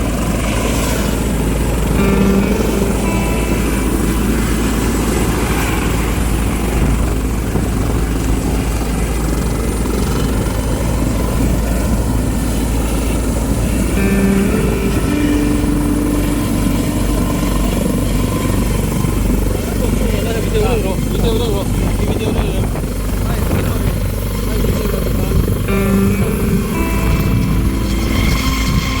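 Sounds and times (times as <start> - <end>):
helicopter rotor and engine: 0.0 - 29.0
brief pitched tones: 1.9 - 7.4, 13.6 - 19.8, 25.7 - 29.0.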